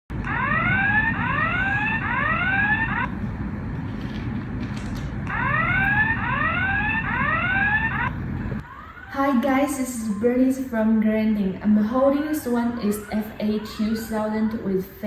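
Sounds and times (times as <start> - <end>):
electronic siren-like alarm whoops: 0.1 - 3.2, 5.3 - 11.0, 11.9 - 15.0.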